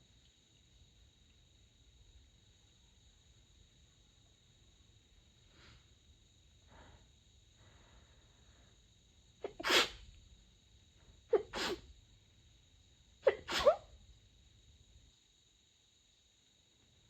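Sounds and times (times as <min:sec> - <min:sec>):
woman sneezing: 0:09.4 - 0:10.0, 0:11.3 - 0:11.8, 0:13.2 - 0:13.9.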